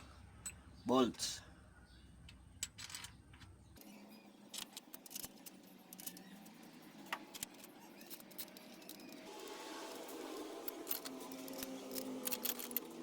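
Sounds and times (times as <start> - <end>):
metal bolts clinking: 2.6 - 3.4, 4.5 - 9.3, 10.7 - 13.0.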